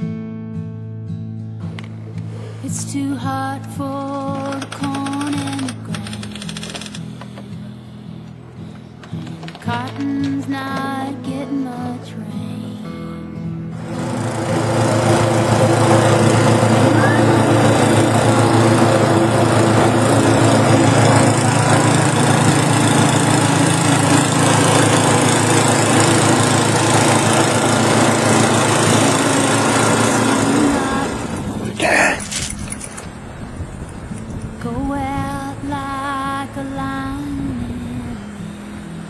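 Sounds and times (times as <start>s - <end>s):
snow blower engine running: 13.8s - 33.1s.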